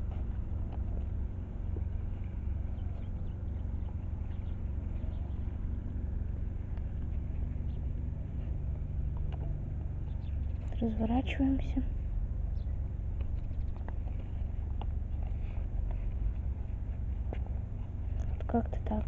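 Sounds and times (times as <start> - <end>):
stroller wheels rolling on path: 0.0 - 19.0.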